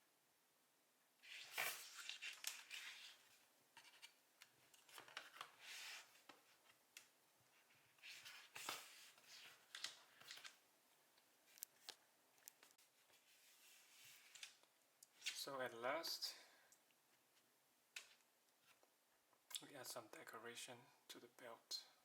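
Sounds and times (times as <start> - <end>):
rustling and scraping of modelling clay: 1.2 - 15.5, 17.0 - 19.0.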